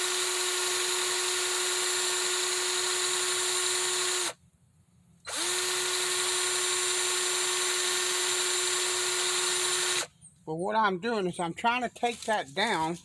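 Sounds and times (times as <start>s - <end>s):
power tool motor running: 0.0s - 4.4s, 5.3s - 10.1s.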